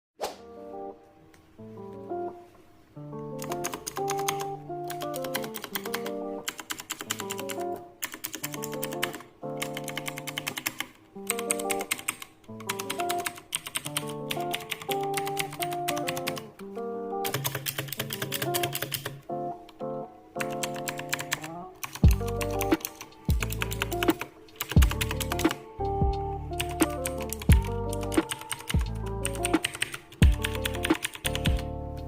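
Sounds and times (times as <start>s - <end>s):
background music with sustained notes: 0.2s - 32.0s
clicky mechanical keyboard typing: 3.4s - 16.6s, 17.2s - 19.2s, 20.4s - 25.6s, 26.6s - 31.7s.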